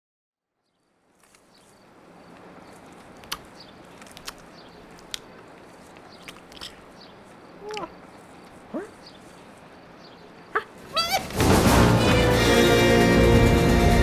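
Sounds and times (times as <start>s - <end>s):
sharp clicks: 2.3s - 6.9s.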